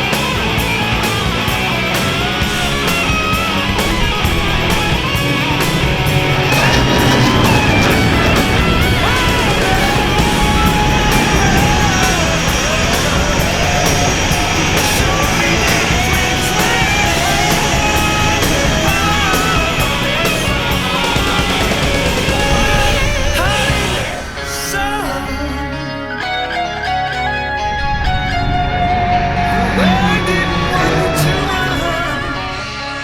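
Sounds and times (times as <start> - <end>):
driving drum beat: 0.0 - 25.6
electric guitars: 0.0 - 33.0.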